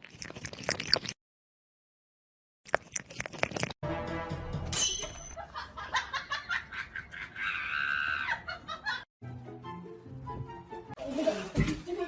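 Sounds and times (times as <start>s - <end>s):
music: 3.8s - 4.8s, 9.2s - 12.0s.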